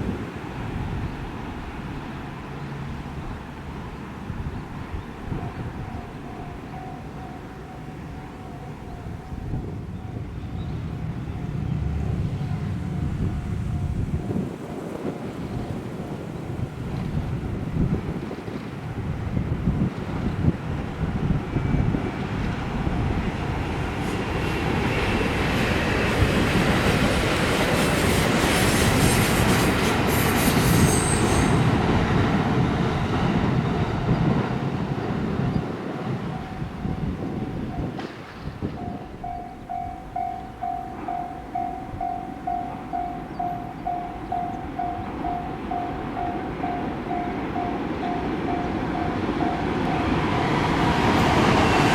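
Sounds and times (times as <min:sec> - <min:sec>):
high train squeal: 0:00.5 - 0:51.9
train wheels clattering over rails: 0:22.4 - 0:51.9
level crossing alarm ringing: 0:38.8 - 0:51.9.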